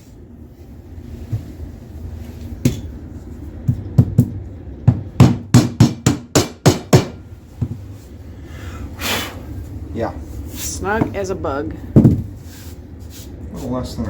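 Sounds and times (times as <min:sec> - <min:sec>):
hammer knocking floor plank: 0:04.9 - 0:07.8.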